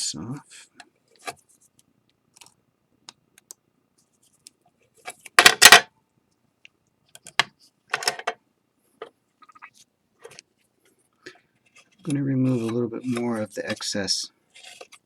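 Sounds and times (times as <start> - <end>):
metal knife scraping ceramic: 11.7 - 15.0.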